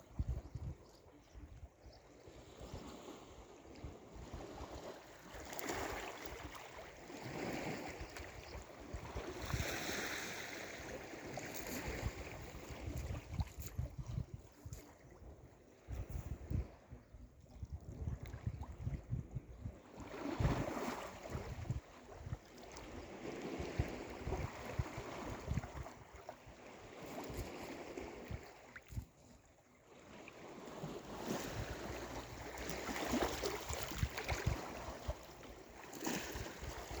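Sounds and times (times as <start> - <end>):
wind buffeting microphone: 0.0 - 4.9, 10.8 - 26.2, 31.2 - 35.3
sea waves breaking on shore: 2.4 - 13.7, 19.8 - 29.0, 29.8 - 37.0.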